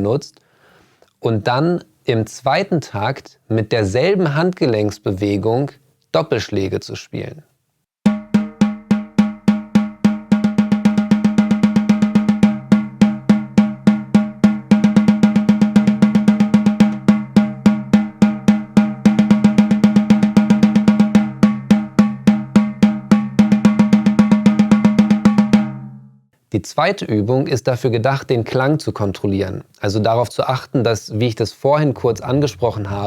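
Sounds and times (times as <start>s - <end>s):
snare drum strokes: 8.1s - 25.8s.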